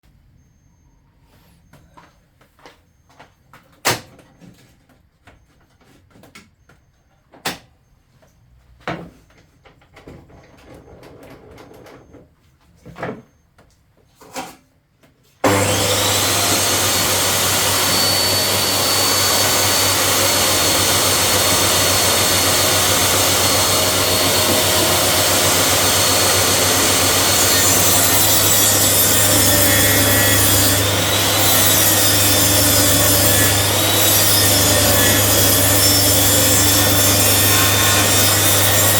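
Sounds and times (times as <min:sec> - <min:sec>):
electric power tool running: 0:15.4 - 0:38.9.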